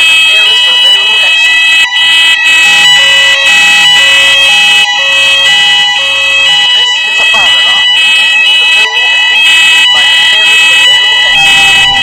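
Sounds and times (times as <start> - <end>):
fire alarm two-tone signal: 0.0 - 12.0.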